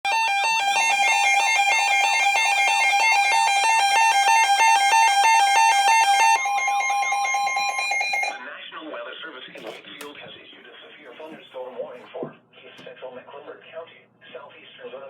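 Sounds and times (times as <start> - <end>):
two-tone alarm: 0.0 - 8.5.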